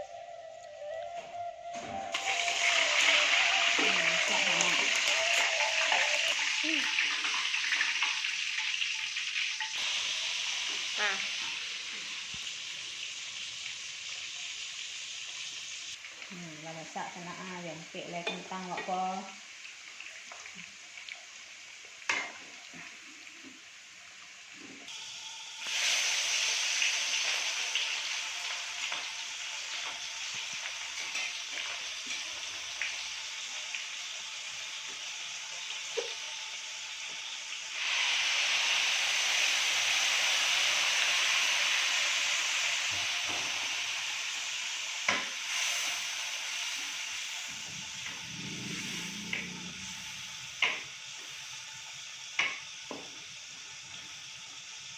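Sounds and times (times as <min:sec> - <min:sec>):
food sizzling in hot oil: 0:01.9 - 0:54.9.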